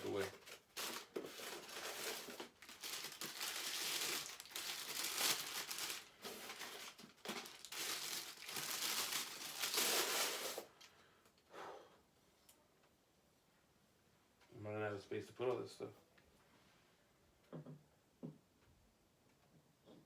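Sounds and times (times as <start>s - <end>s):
packaging crinkling: 0.0s - 10.9s.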